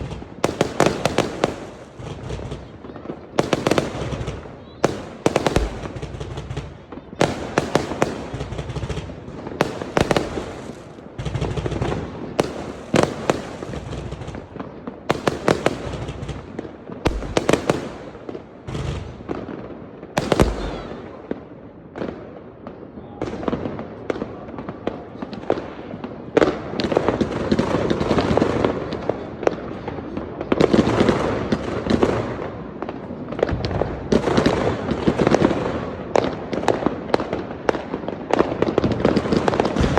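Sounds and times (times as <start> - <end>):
fireworks crackling: 0.0 - 21.6, 25.2 - 39.9
firework shells bursting: 5.3 - 6.2.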